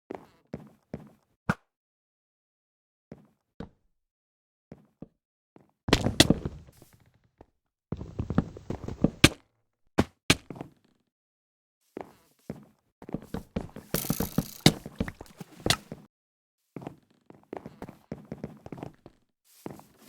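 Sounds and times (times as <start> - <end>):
quick clattering thumps: 14.0 - 15.9.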